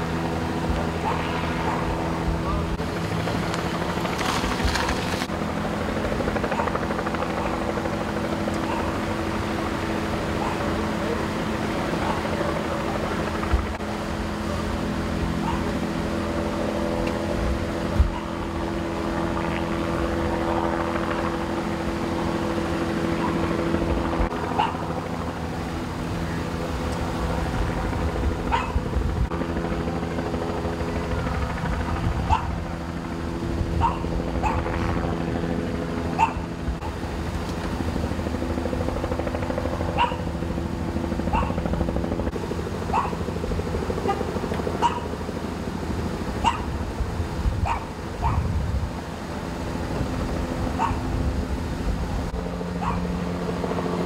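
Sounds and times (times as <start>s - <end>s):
engine hum: 0.0s - 54.0s
dog barking: 1.0s - 2.6s, 6.5s - 6.8s, 7.4s - 7.6s, 8.6s - 9.0s, 10.4s - 10.7s, 12.0s - 12.3s, 15.4s - 15.8s, 18.0s - 18.4s, 23.2s - 23.5s, 24.6s - 24.8s, 28.5s - 28.8s, 32.3s - 32.6s, 33.8s - 34.7s, 36.2s - 36.4s, 40.0s - 40.2s, 41.3s - 41.6s, 42.9s - 43.2s, 44.8s - 45.1s, 46.4s - 46.7s, 47.6s - 48.5s, 50.8s - 51.0s, 52.8s - 53.0s.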